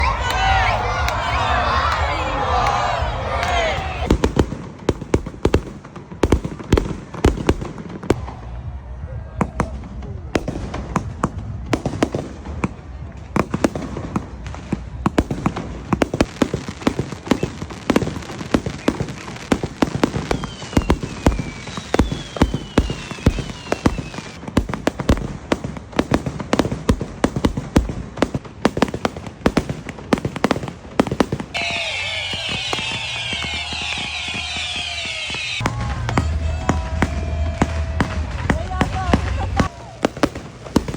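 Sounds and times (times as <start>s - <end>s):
falling whistling fireworks: 0.0s - 40.9s
fireworks bangs and crackles: 0.0s - 40.9s.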